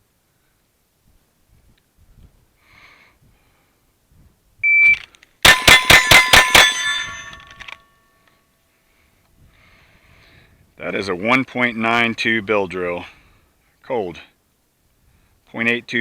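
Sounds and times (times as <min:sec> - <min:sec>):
shot timer beep: 0:04.6 - 0:05.0
ringing tone: 0:04.7 - 0:08.2
rapid handgun shots: 0:05.5 - 0:07.4.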